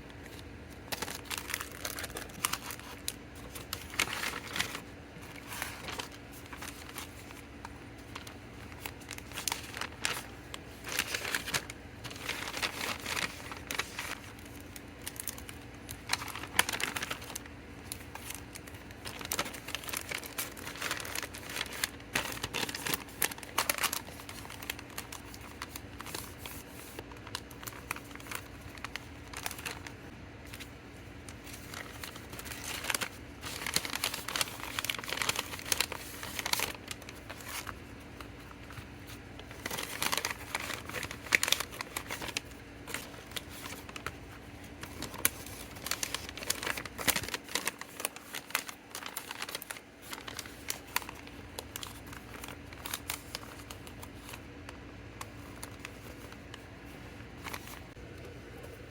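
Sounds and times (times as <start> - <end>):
plastic packaging crinkling: 0.0 - 58.9.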